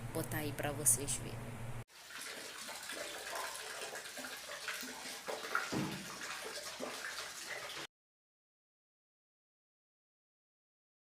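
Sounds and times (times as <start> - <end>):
short knocks: 5.7 - 6.1.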